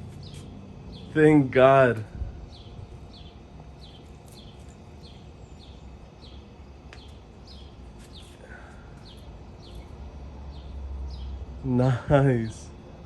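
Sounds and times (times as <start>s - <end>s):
bird chirping: 0.0s - 1.4s, 2.4s - 11.4s
steady low hum: 0.0s - 13.0s.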